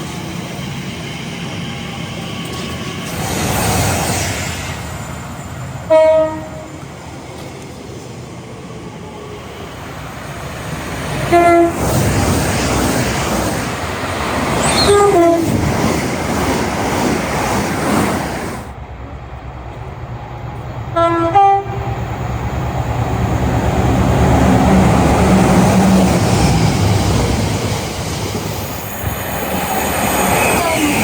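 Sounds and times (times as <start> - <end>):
passing train rumble: 0.0 - 31.0
train horn blasts: 5.9 - 6.8, 11.3 - 11.8, 14.8 - 15.4, 21.0 - 22.0.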